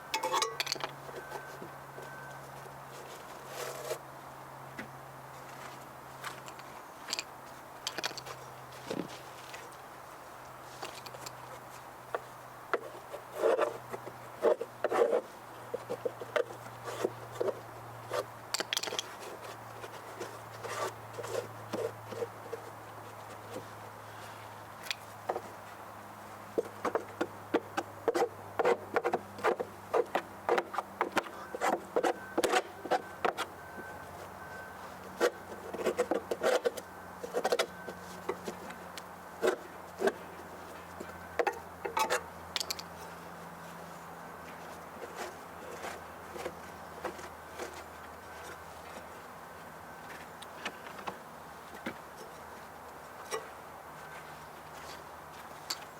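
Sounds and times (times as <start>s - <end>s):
clicks knocks and scrapes: 12.8s - 23.7s, 35.2s - 38.8s.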